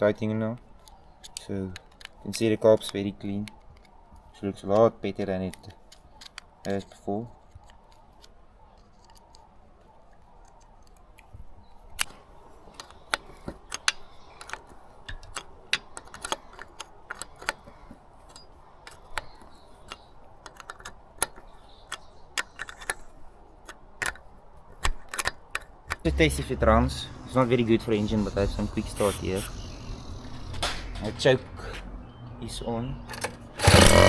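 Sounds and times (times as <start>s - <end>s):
metal tools clicking and tapping: 12.8s - 24.2s.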